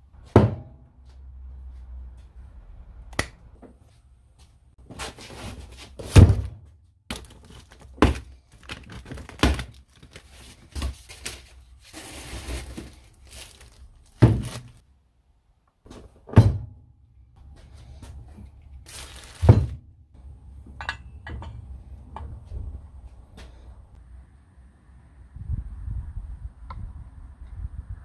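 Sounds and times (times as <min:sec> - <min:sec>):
objects thudding and knocking: 0:04.8 - 0:14.8, 0:15.9 - 0:16.8, 0:17.9 - 0:19.9
rustling tearing noise: 0:07.1 - 0:14.8, 0:18.8 - 0:19.5.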